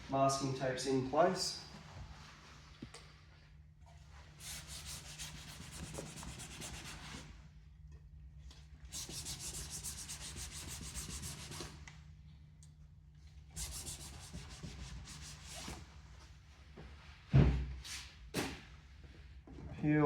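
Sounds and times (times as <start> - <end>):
cloth rubbing on plastic: 4.4 - 7.2, 13.6 - 15.9.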